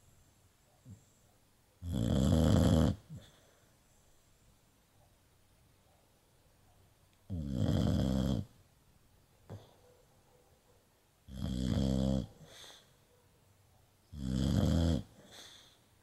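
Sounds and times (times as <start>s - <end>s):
pet snoring: 1.8s - 3.4s, 7.3s - 8.5s, 11.3s - 12.7s, 14.1s - 15.6s.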